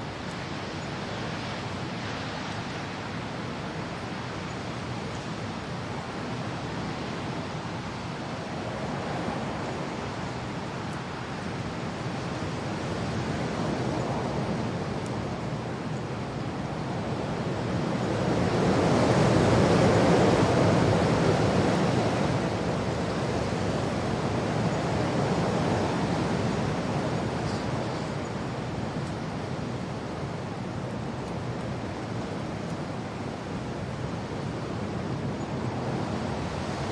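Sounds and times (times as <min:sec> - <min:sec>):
rain: 0:00.0 - 0:36.9
wind gusting: 0:00.0 - 0:36.9.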